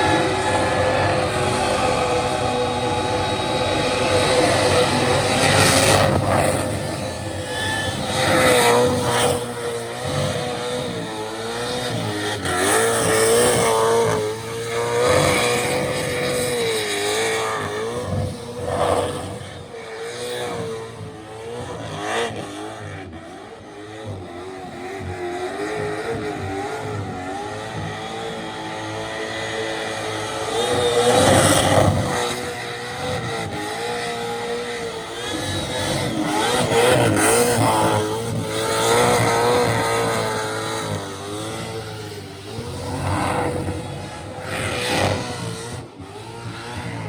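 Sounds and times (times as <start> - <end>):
car engine revving high: 0.0 - 47.0.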